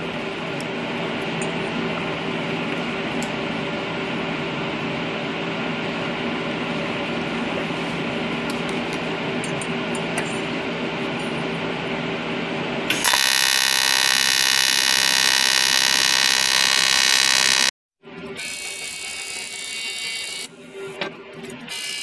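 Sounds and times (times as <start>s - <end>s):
welder humming: 0.0s - 17.7s, 18.3s - 22.0s
welding arc buzzing and hissing: 12.9s - 17.7s, 18.4s - 20.5s, 21.7s - 22.0s.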